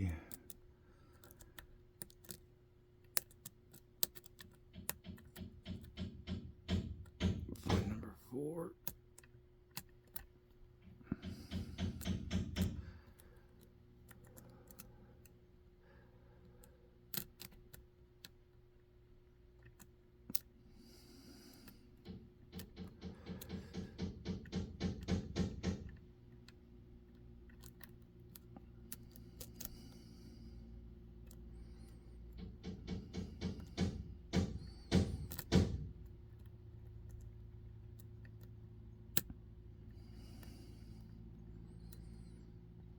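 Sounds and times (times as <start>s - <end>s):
lock pick clicking in lock: 0.3s - 7.4s, 16.5s - 18.4s, 19.5s - 20.5s, 27.5s - 30.1s, 34.7s - 39.3s.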